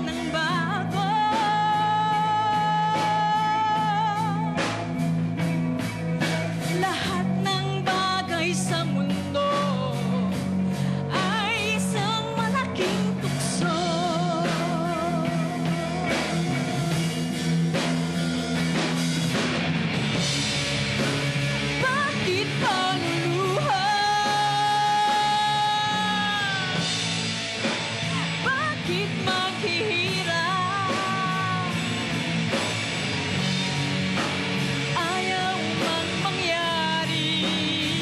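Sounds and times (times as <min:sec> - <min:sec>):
person singing with vibrato: 0:00.0 - 0:04.9, 0:06.6 - 0:17.7, 0:21.8 - 0:32.0, 0:34.9 - 0:38.0
rock band playing live: 0:00.0 - 0:38.0.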